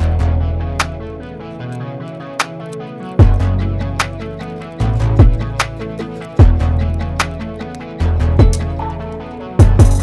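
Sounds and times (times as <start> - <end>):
background music with deep bass: 0.0 - 10.0
plucked guitar: 2.6 - 10.0.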